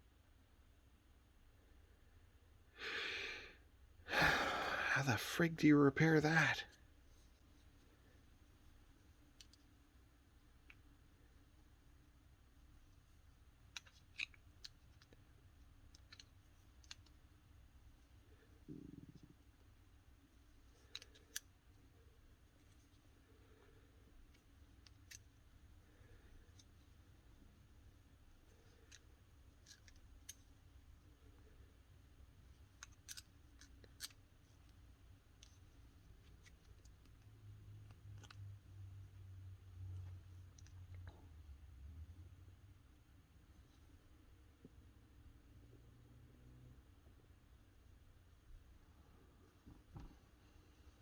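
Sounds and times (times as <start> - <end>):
small parts clicking: 9.3 - 9.7, 13.6 - 17.2, 20.7 - 21.8, 24.1 - 25.4, 28.5 - 30.5, 32.5 - 37.2.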